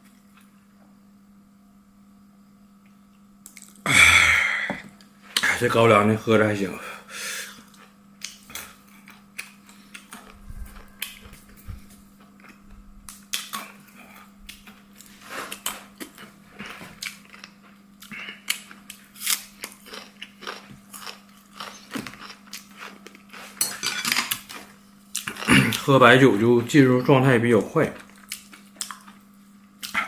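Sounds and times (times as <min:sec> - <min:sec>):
steady low hum: 0:00.0 - 0:30.0
person chewing food: 0:07.6 - 0:25.9, 0:28.0 - 0:30.0.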